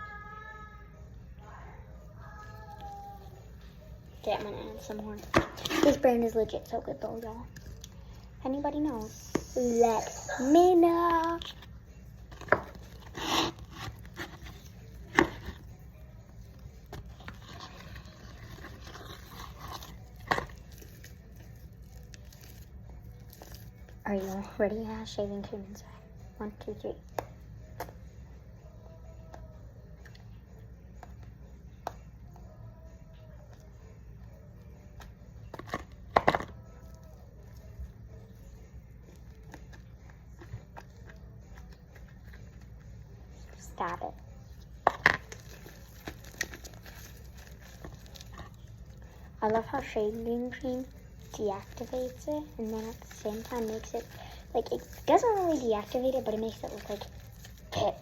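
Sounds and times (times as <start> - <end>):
soft rubbing of slime: 1.9 - 26.1, 32.2 - 58.0
slime being squished: 16.4 - 24.5, 44.8 - 58.0.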